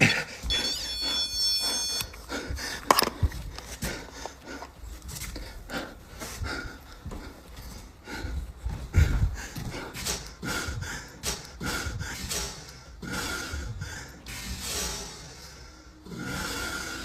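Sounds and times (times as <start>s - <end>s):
man panting heavily: 0.0s - 17.0s.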